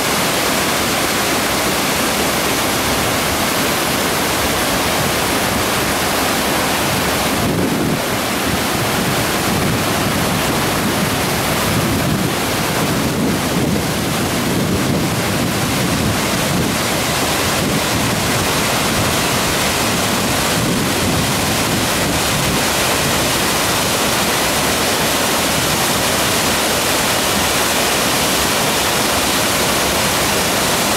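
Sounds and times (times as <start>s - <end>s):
waterfall roaring: 0.0s - 30.9s
wind buffeting microphone: 6.6s - 24.0s.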